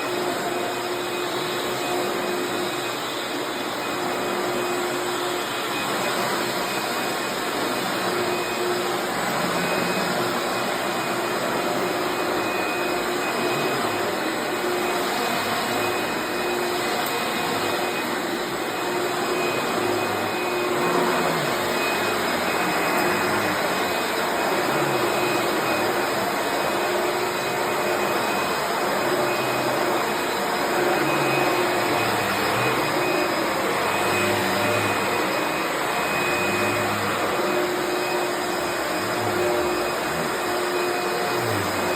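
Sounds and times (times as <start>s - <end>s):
upright vacuum cleaner running: 0.0s - 41.9s.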